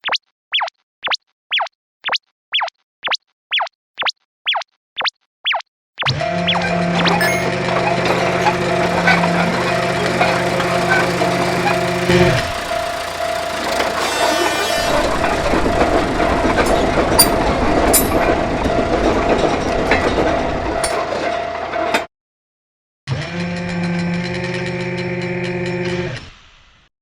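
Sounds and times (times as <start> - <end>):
steady warning tone: 6.1 - 21.8
cartoon train rumble: 6.1 - 22.0
train clacks: 6.9 - 22.0
horn-like chord: 7.0 - 17.5.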